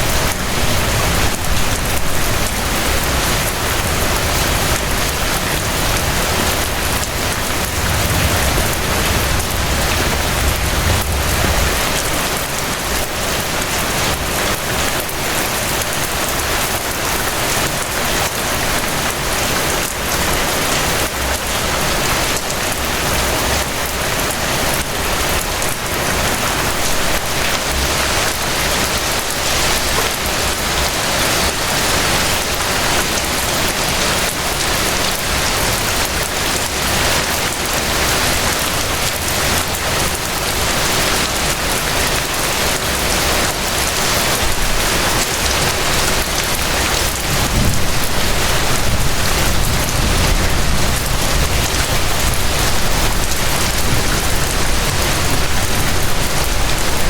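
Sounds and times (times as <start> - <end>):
steady rain falling: 0.0 - 57.0
low rumble: 0.6 - 13.0.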